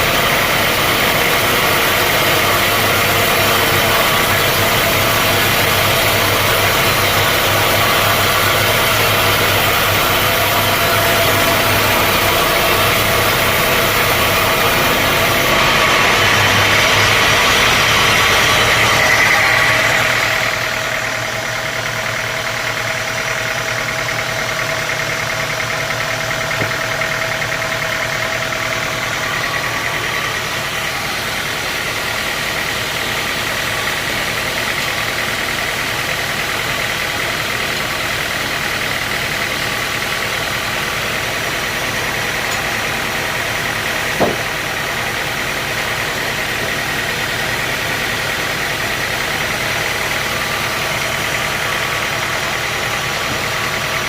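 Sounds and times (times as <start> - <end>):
sawmill machinery running: 0.0 - 54.0
sharp knock: 44.2 - 44.5.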